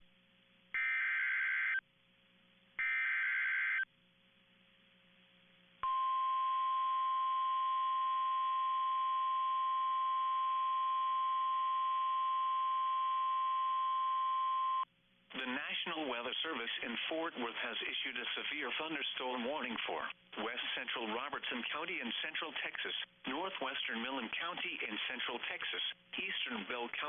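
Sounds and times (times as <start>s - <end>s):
steady warning alarm tone: 0.8s - 1.8s, 2.8s - 3.9s.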